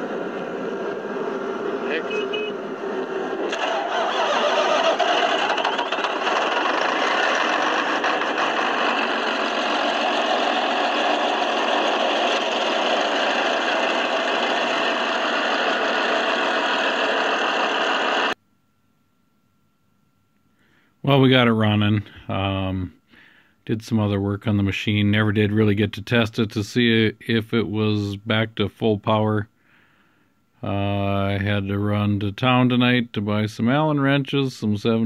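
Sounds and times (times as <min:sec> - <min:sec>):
diesel engine running: 0:00.0 - 0:18.4.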